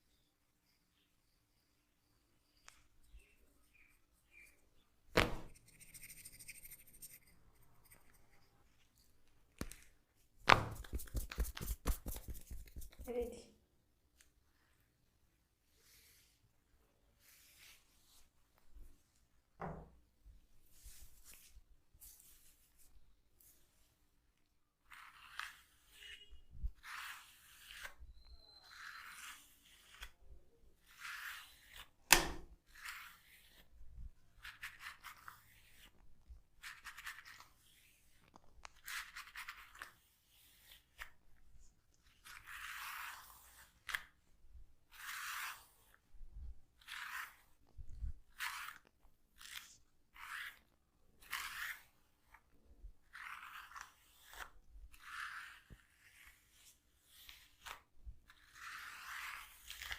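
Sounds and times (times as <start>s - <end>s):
fingers rubbing hair and scalp: 5.2s - 8.6s, 10.5s - 13.4s.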